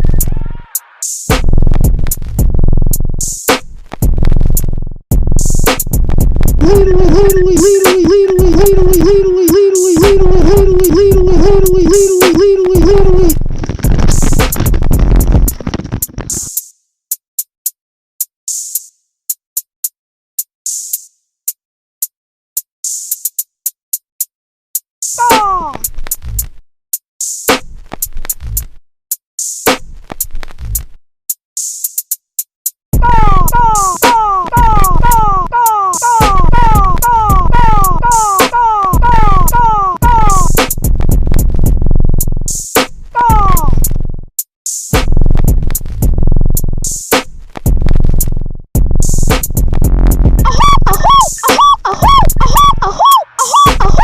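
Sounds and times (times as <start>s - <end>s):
low bass: 0.0s - 0.5s, 1.3s - 7.7s, 10.0s - 15.8s, 25.9s - 26.5s, 39.0s - 42.6s, 43.4s - 44.3s, 45.0s - 47.0s, 47.7s - 50.5s
electronic drum machine beat: 4.0s - 16.5s, 33.0s - 41.9s, 43.2s - 43.9s, 48.8s - 54.0s.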